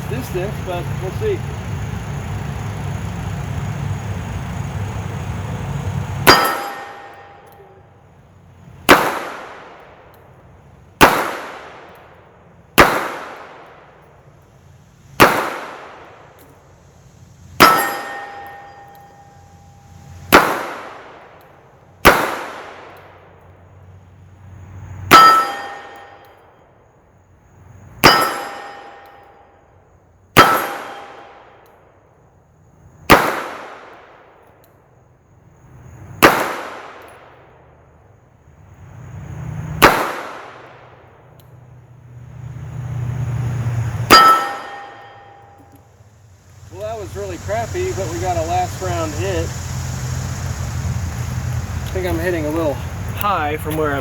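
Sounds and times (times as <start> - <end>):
pistol shots: 6.2 - 7.8, 8.9 - 10.2, 11.0 - 12.2, 12.8 - 14.0, 15.2 - 16.5, 20.3 - 21.4, 22.0 - 23.3, 30.4 - 31.7, 33.1 - 34.5, 36.2 - 37.6, 39.8 - 41.3
metallic ringing: 6.2 - 7.9, 17.6 - 20.3, 25.1 - 26.5, 28.0 - 29.6, 43.9 - 46.0.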